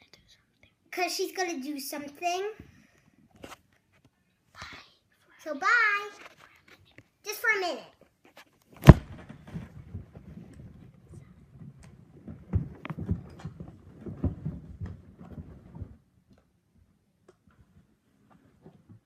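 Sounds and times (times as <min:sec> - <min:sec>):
rustling and light bumps: 0:08.0 - 0:19.0
loud knock: 0:08.8 - 0:09.7
microphone handling noise: 0:08.8 - 0:16.0.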